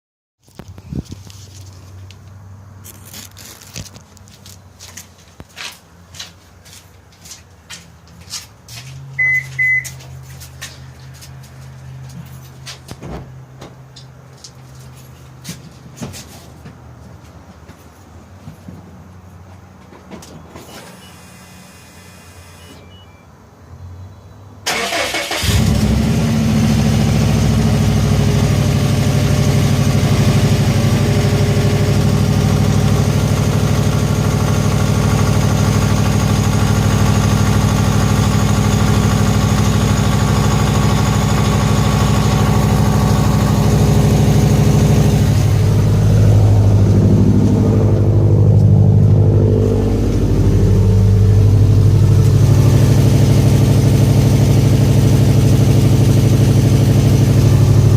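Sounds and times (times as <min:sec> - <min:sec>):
car starter cranking: 0:24.7 - 0:26.2
car engine idling loudly: 0:24.9 - 0:57.9.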